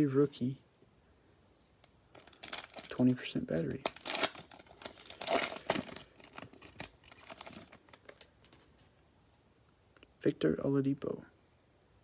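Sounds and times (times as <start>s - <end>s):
wrapper being torn and crinkled: 2.1s - 8.6s.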